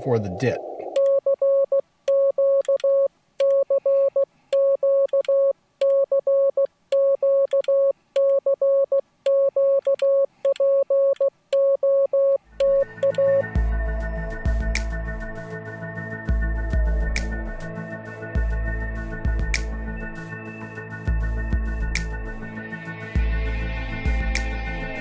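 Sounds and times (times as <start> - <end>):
morse code beeps: 1.0 - 13.5
electronic music with deep bass: 12.5 - 25.0.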